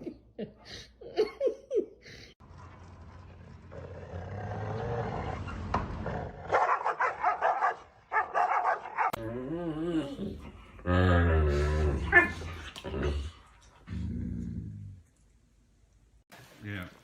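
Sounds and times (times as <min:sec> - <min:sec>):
dog barking and yipping: 0:06.5 - 0:09.2.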